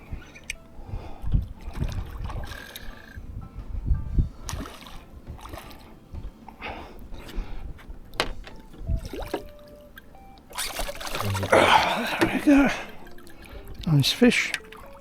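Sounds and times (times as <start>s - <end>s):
water splashing: 0.0s - 15.0s
knocks on a rowing boat: 4.5s - 6.3s, 7.8s - 9.5s.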